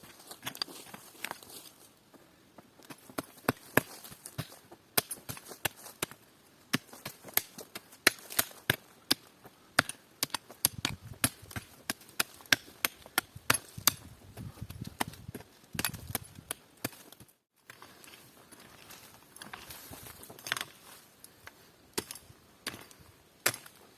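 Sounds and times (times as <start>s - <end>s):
wood being chopped: 3.2s - 14.1s
low shuffling rustle: 17.8s - 21.2s.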